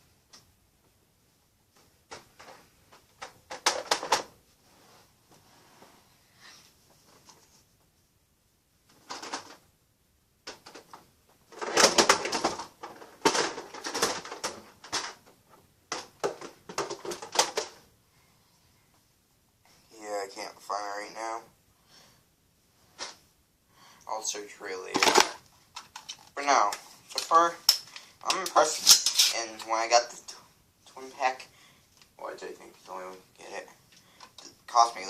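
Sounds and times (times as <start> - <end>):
clattering knocks and rustling: 10.5 - 17.9.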